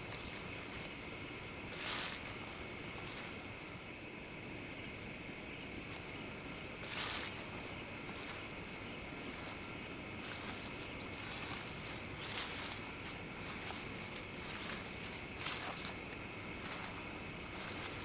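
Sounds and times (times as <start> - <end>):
footsteps crunching dry leaves: 0.0 - 3.8, 5.7 - 18.0
night insects chorus: 0.0 - 18.0.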